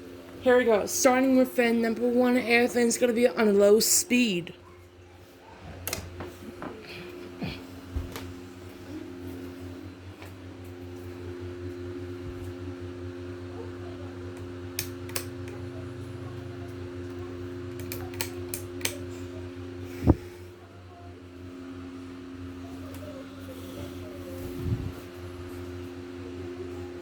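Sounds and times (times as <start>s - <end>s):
ceiling fan motor hum: 0.0s - 27.0s
sharp clicks: 14.8s - 15.6s, 17.8s - 19.0s.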